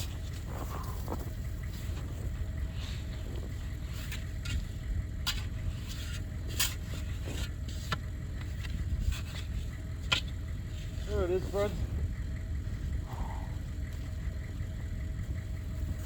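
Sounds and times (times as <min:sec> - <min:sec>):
wind buffeting microphone: 0:11.1 - 0:16.0.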